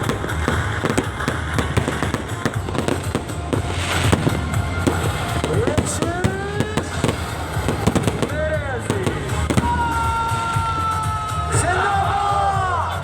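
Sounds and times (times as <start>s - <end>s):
firework whistles: 0.0s - 8.4s
fireworks crackling and banging: 0.0s - 11.7s
music: 0.0s - 13.0s.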